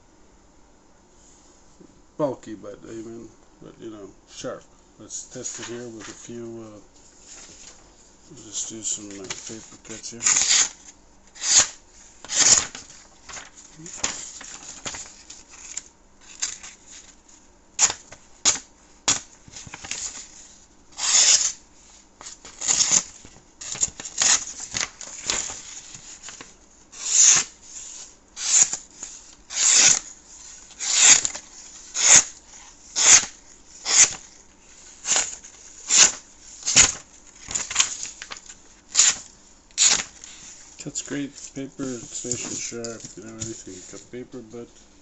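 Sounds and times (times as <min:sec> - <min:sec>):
knife slicing paper: 0:10.2 - 0:10.8, 0:11.4 - 0:15.0, 0:21.0 - 0:21.6, 0:22.6 - 0:40.6.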